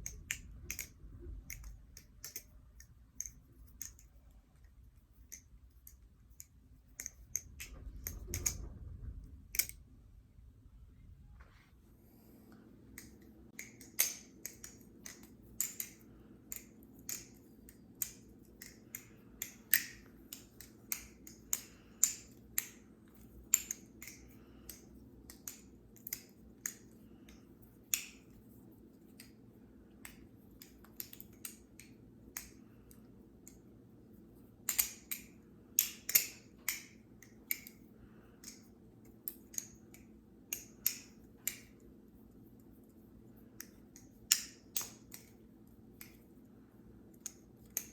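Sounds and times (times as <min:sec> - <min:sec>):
butterfly knife clicking: 0:00.0 - 0:04.1.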